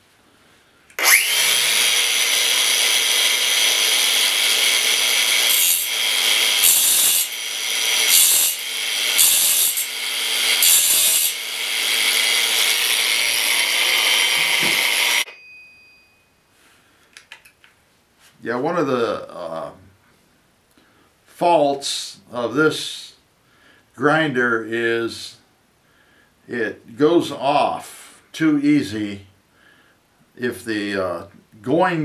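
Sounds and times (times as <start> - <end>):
grinder grinding metal: 1.0 - 15.3.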